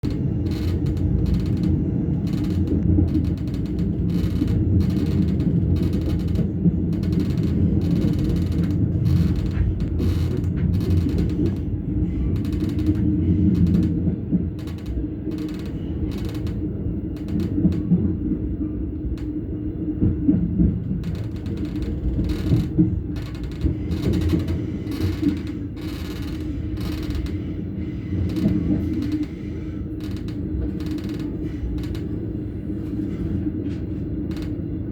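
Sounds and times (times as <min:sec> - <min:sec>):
running gear clicks and creaks: 0:00.0 - 0:11.7, 0:12.3 - 0:14.0, 0:14.6 - 0:16.6, 0:21.0 - 0:27.4, 0:28.3 - 0:29.4, 0:30.0 - 0:32.1
engine and wheels rumbling on rail: 0:00.0 - 0:34.9.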